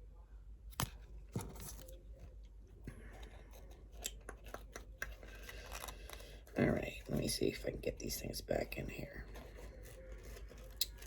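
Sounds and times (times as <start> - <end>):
paper cards rustling and clicking: 0.7 - 2.0, 3.2 - 6.6, 9.2 - 11.0.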